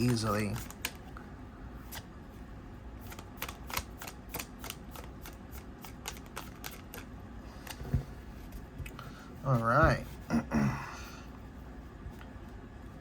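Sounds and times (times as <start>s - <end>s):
cards riffled by hand: 0.0s - 1.0s, 3.0s - 7.8s.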